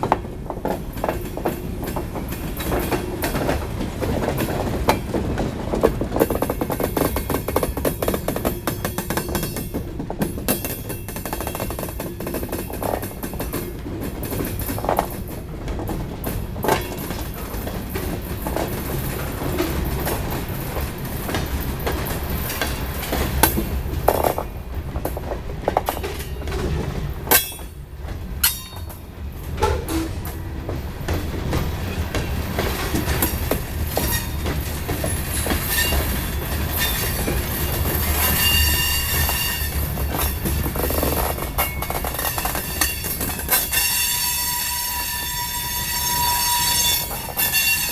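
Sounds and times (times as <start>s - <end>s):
train rumbling by: 0.0s - 47.9s
high wheel squeal: 34.0s - 34.5s, 35.1s - 37.4s, 38.1s - 40.0s, 41.0s - 47.9s
wheel clicks and knocks: 39.2s - 43.8s.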